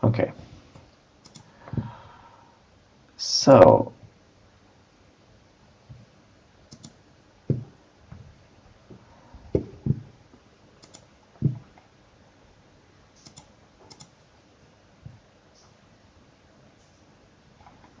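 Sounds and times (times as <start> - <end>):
computer mouse clicking: 0.7 - 1.5, 6.7 - 7.6, 10.8 - 11.6, 13.2 - 14.2.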